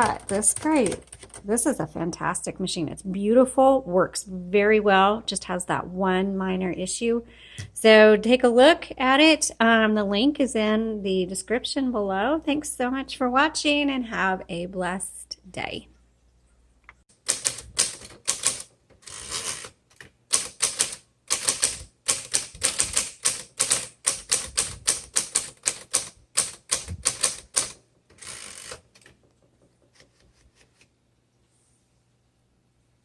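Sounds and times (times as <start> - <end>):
typewriter key strikes: 20.3 - 27.8.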